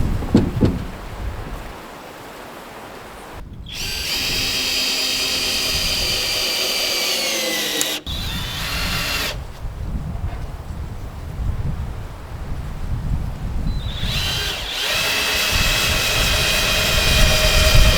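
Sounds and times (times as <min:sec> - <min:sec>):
power drill whirring: 0:03.7 - 0:09.6, 0:13.8 - 0:17.9.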